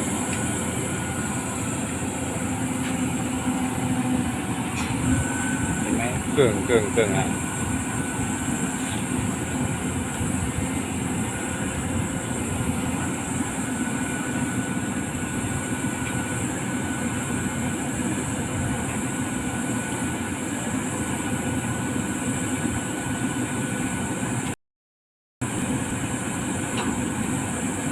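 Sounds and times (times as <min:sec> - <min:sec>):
faint steady whine: 0:00.0 - 0:24.4
excavator diesel engine running: 0:00.0 - 0:24.5, 0:25.4 - 0:27.9.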